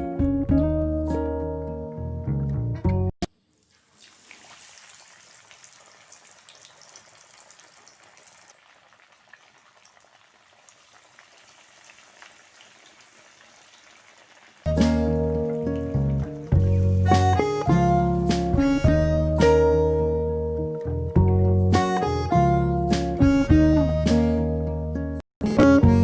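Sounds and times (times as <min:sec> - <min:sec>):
background music: 0:00.0 - 0:03.1, 0:14.7 - 0:26.0
oil crackles: 0:03.5 - 0:14.7
fish frying in hot oil: 0:03.8 - 0:16.6.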